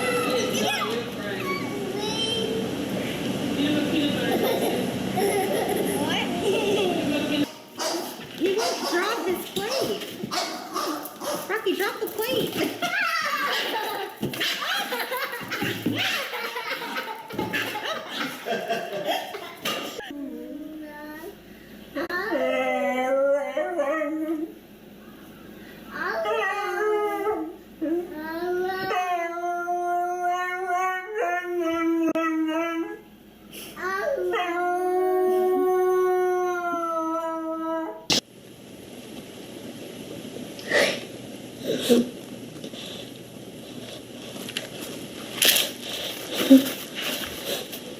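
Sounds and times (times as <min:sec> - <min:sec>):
voices: 0:00.0 - 0:21.0
laughter in bursts: 0:04.2 - 0:07.5, 0:13.4 - 0:20.1.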